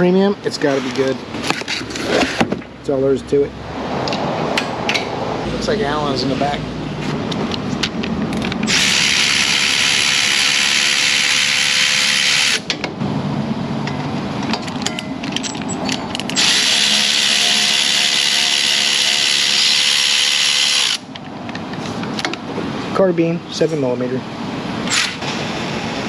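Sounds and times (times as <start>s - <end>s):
power tool hissing: 8.7s - 12.6s.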